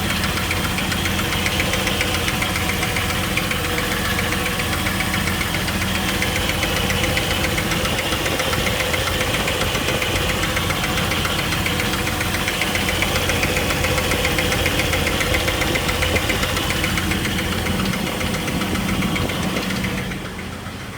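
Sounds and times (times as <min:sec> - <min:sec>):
engine idling with rapid ticking: 0:00.0 - 0:20.9.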